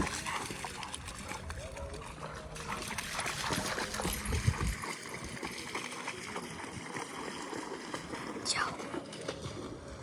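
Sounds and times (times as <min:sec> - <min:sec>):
floodwater splashing and sloshing: 0:00.0 - 0:10.0
wind rumble on microphone: 0:03.4 - 0:05.4.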